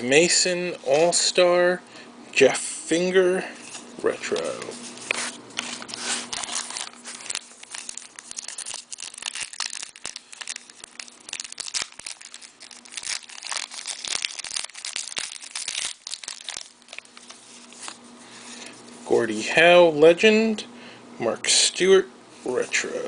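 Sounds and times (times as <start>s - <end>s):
foil wrappers crinkling and tearing: 3.7s - 18.8s.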